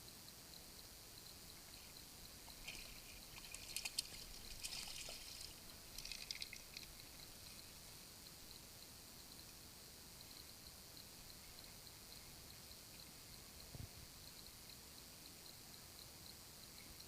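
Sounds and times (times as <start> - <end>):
water splashing and trickling: 2.4 - 7.8.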